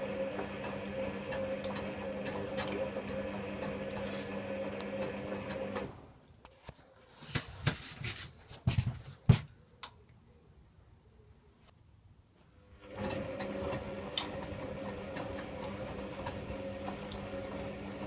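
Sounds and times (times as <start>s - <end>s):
washing machine motor humming: 0.0s - 6.0s, 12.8s - 18.0s.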